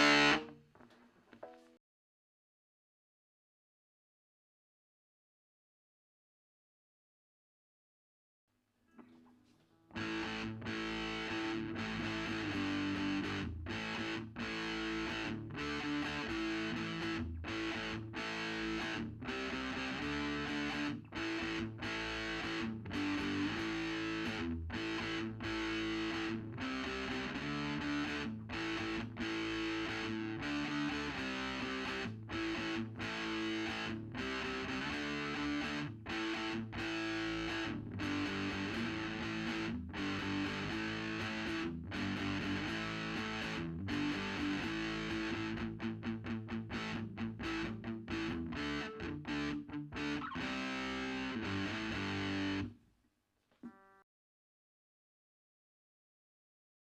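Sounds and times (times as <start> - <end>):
distorted electric guitar riff: 0.0 - 0.6, 9.0 - 52.7.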